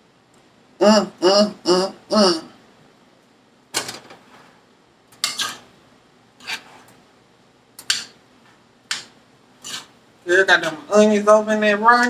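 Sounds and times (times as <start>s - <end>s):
utensil scraping pot of rice: 5.2s - 5.7s, 6.4s - 7.0s, 8.9s - 10.0s.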